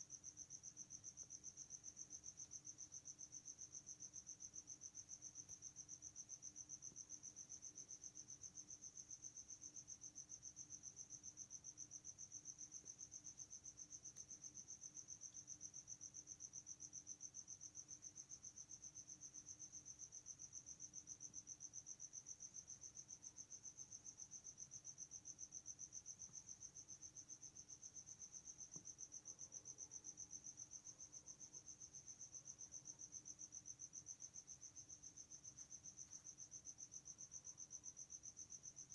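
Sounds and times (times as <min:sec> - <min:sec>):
faint cricket chirping: 0:00.0 - 0:38.9.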